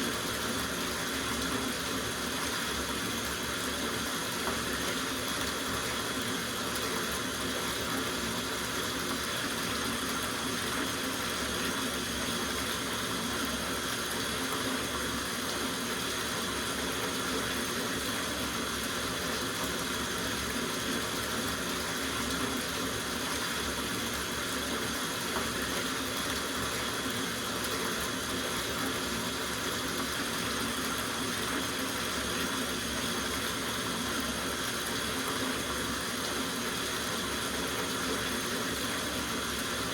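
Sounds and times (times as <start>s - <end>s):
tap water running into bathtub: 0.0s - 39.9s.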